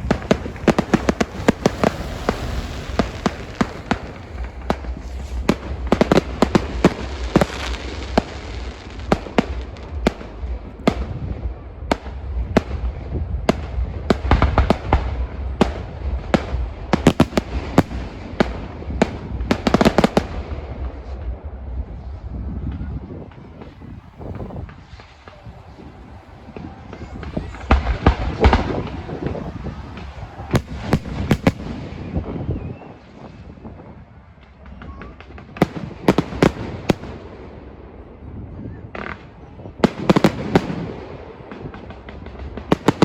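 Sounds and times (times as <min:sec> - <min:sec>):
low rumble: 0:00.0 - 0:14.3
fireworks bangs and crackles: 0:00.0 - 0:43.0.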